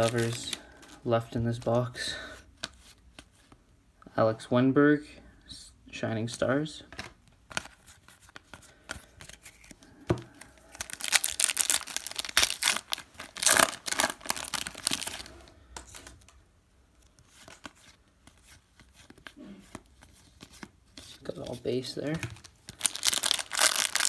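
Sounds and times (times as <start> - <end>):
wrapper tearing and crinkling: 0.0 - 1.0, 10.6 - 16.1, 22.1 - 24.0.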